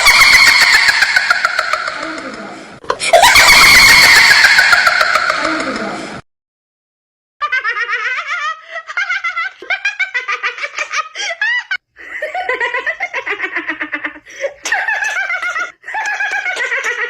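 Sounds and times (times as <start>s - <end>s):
high-pitched rapid laughing: 0.0s - 6.1s, 7.5s - 17.0s.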